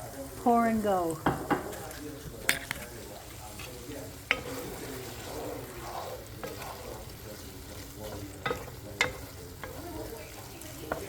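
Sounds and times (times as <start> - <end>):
stir-fry sizzling in a pan: 0.0 - 11.0.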